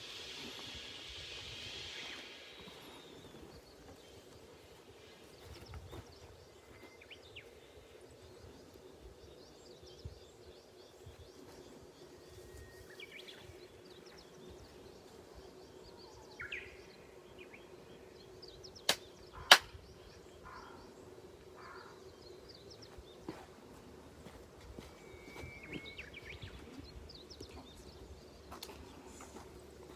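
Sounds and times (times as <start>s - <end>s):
faint steady hum: 0.0s - 29.9s
small birds chirping: 0.1s - 29.9s
sharp hand claps: 18.9s - 19.8s.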